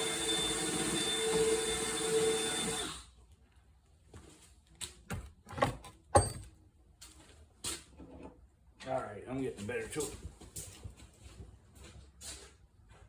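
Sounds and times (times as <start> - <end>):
power drill running: 0.0 - 3.1.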